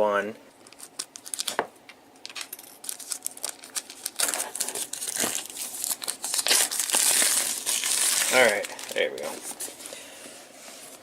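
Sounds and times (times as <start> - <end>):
plastic packaging crinkling and tearing: 0.6 - 1.6, 2.3 - 10.0.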